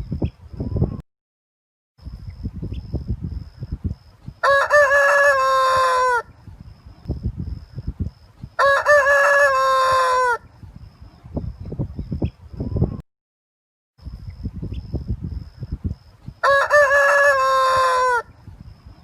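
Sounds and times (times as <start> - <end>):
rooster crowing: 4.4 - 6.3, 8.6 - 10.4, 16.4 - 18.4.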